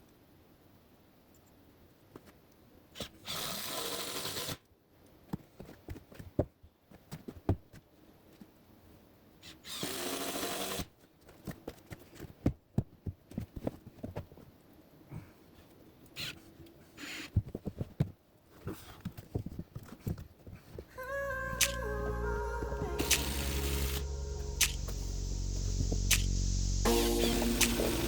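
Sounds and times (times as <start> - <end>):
power drill driving screws: 3.0 - 4.6, 9.5 - 10.9, 21.6 - 21.8, 23.0 - 24.0, 24.6 - 25.0.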